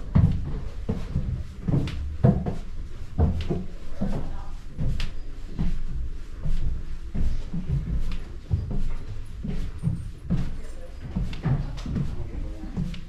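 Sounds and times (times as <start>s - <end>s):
dull thumps and knocks: 0.1s - 4.2s.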